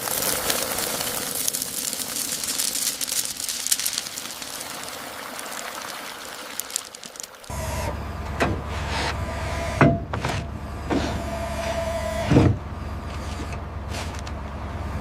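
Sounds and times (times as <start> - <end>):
small electric motors whining: 10.8 - 12.4.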